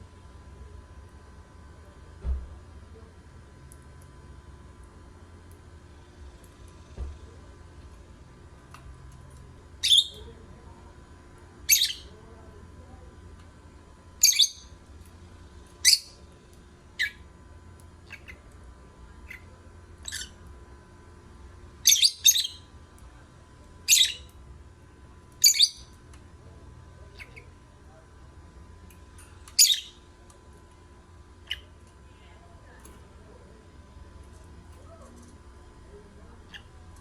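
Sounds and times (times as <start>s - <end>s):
lovebird chirping: 11.7s - 12.1s, 21.9s - 22.6s, 25.4s - 25.8s, 29.6s - 29.9s.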